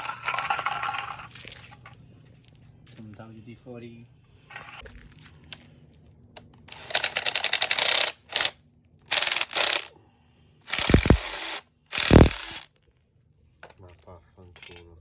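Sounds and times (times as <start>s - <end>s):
impact drill hammering: 9.1s - 9.9s, 10.7s - 12.7s.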